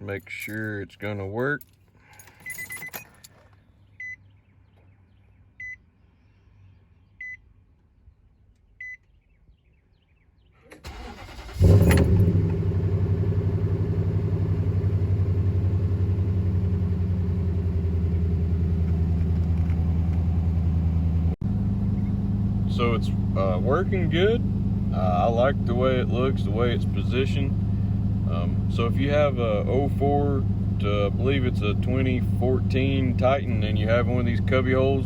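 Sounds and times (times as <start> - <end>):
engine cranking and idling: 10.7 - 35.0.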